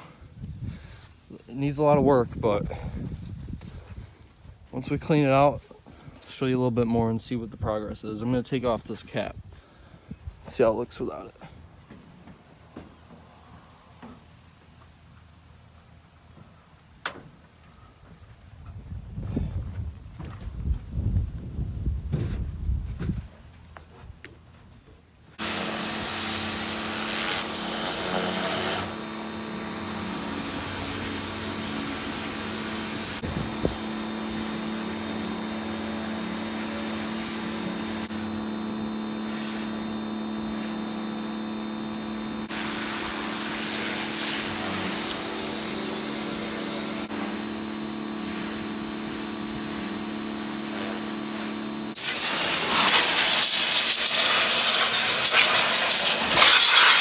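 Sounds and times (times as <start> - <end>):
machine hum: 25.4 - 53.2
hissing rush: 25.4 - 57.0.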